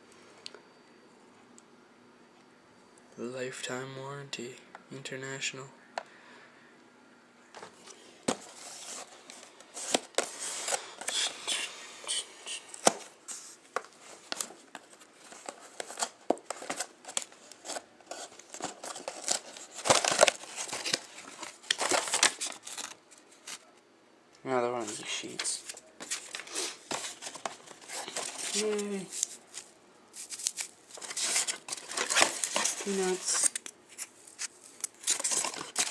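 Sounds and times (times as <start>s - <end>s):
packaging crinkling and tearing: 14.1s - 23.7s, 25.3s - 35.9s.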